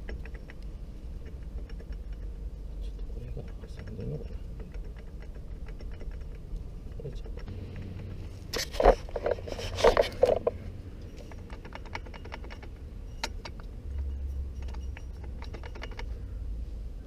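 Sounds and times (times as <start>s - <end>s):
metal tools clinking: 8.5s - 16.2s.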